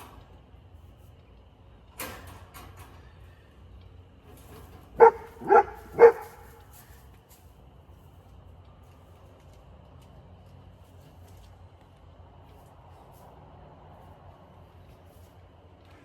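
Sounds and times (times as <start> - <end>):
dog barking: 5.0 - 6.7.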